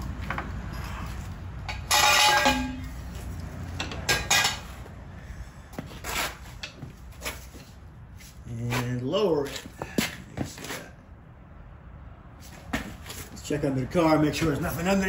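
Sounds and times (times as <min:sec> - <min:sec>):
floor jack metal clanks: 0:01.7 - 0:03.0.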